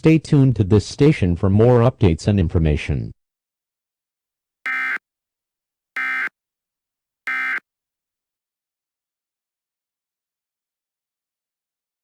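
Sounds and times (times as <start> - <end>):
buzzy data bursts: 4.7 - 5.0, 6.0 - 6.3, 7.3 - 7.6.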